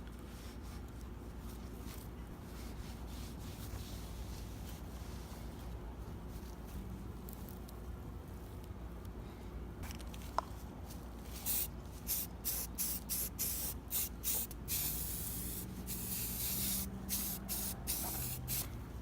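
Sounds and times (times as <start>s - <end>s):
spray can hissing: 11.4s - 18.7s.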